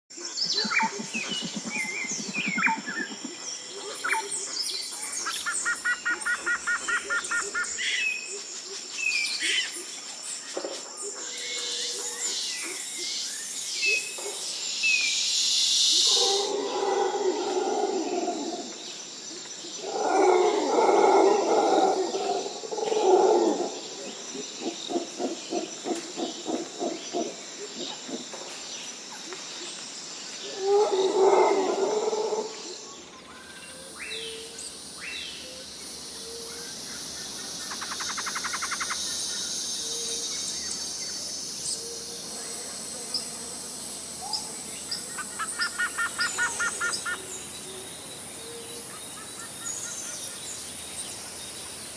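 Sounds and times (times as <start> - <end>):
rapid trilled calls: 0.4 - 3.2, 37.7 - 39.2
coarse bird calls: 0.4 - 4.5.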